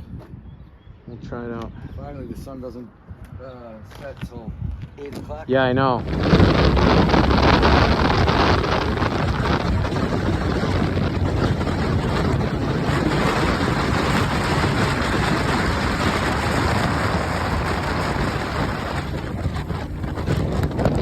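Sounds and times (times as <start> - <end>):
wind rushing over microphone: 0.0 - 21.0
road and engine rumble: 5.9 - 21.0.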